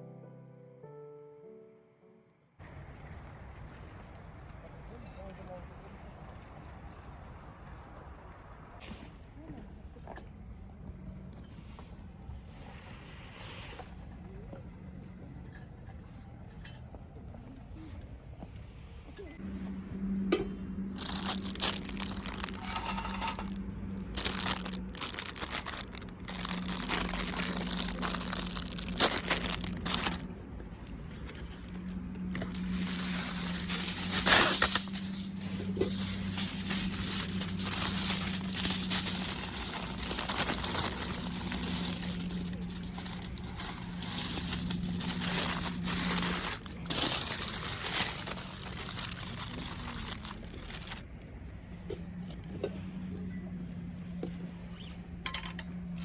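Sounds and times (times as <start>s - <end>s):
crinkling and rustling: 19.2s - 51.1s, 51.8s - 56.0s.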